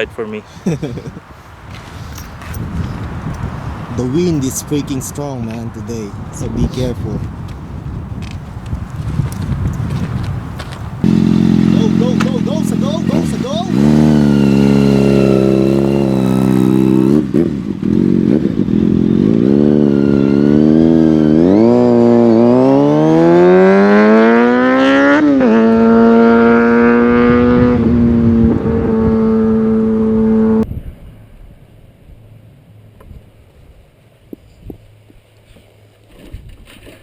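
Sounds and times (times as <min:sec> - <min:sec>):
motorcycle engine accelerating: 0:07.9 - 0:30.7.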